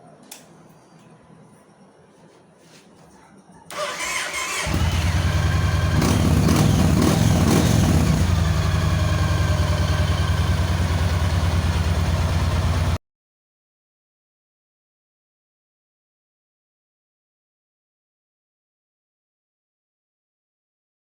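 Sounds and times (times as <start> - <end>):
motorcycle engine starting and idling: 3.7 - 13.0.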